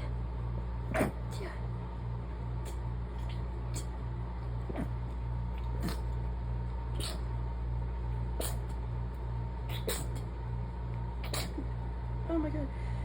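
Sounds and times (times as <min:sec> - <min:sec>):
steady low hum: 0:00.0 - 0:13.0
woman stifling sneezes: 0:11.2 - 0:11.6.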